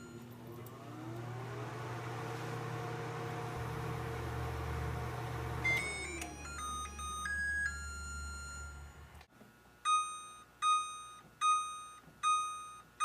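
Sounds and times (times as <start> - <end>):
microwave oven humming: 0.0 - 9.3.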